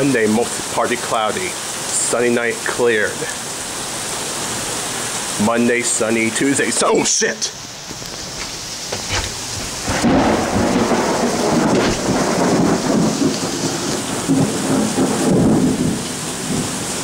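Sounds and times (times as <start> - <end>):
steady rain: 0.0 - 17.0
thunder rumbling: 8.2 - 17.0.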